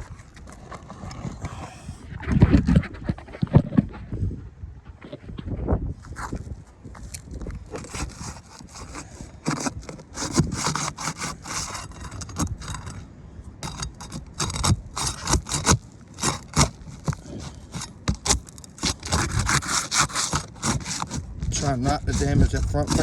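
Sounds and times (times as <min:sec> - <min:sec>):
roof shingles being pried loose: 0:07.5 - 0:13.0, 0:13.6 - 0:23.0.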